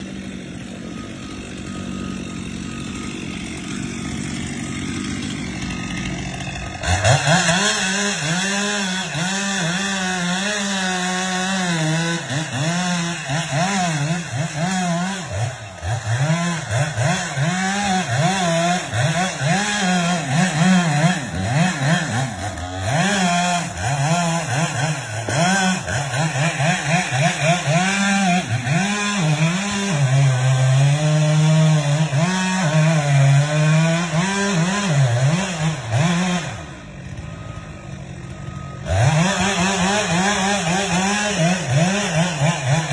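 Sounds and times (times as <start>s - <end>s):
chainsaw revving: 0.0s - 42.9s.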